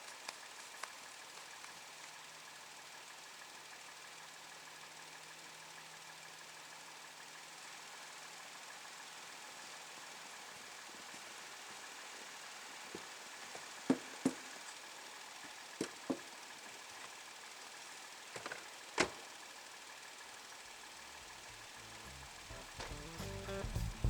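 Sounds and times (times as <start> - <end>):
faint mechanical hum: 5.7 - 24.0.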